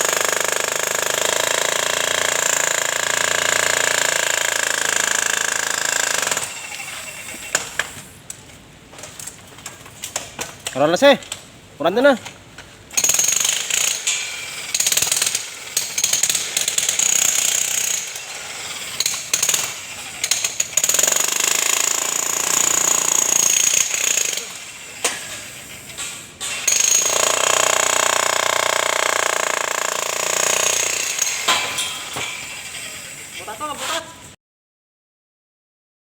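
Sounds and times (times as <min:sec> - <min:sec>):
demolition hammer chiselling concrete: 0:00.0 - 0:07.6, 0:13.0 - 0:25.2, 0:26.6 - 0:32.8.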